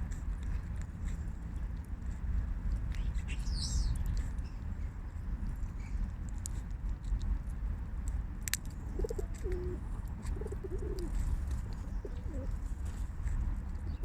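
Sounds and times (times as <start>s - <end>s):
steady low rumble: 0.0s - 14.0s
pigeon cooing: 8.9s - 11.2s, 11.8s - 12.6s.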